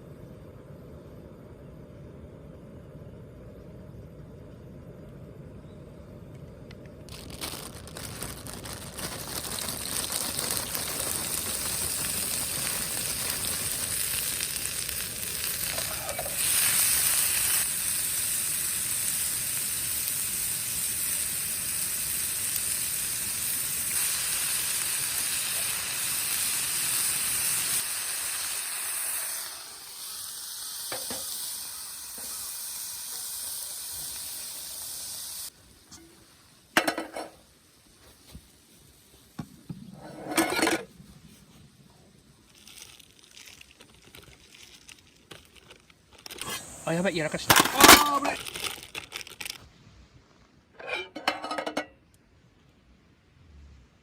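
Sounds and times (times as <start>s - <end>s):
food sizzling in a pan: 7.1s - 37.9s, 46.4s - 48.4s.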